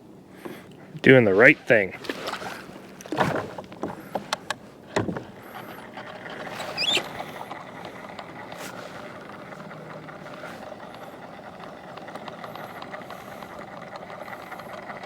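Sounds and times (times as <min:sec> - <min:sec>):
gear knocking and clicking: 0:03.0 - 0:15.0
short rising squeaks: 0:05.4 - 0:11.6.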